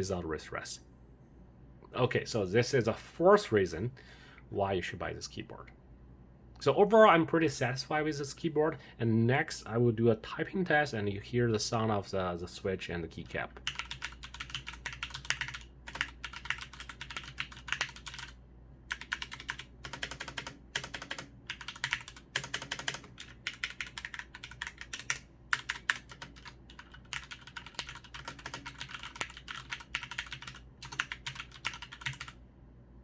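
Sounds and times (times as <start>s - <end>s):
fast typing on mechanical keyboard: 13.6s - 32.4s.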